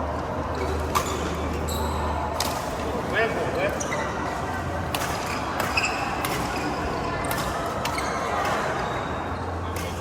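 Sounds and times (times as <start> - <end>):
sports hall background noise: 0.0 - 10.0
shoe squeaks: 1.0 - 2.3, 3.7 - 4.3, 5.2 - 6.2.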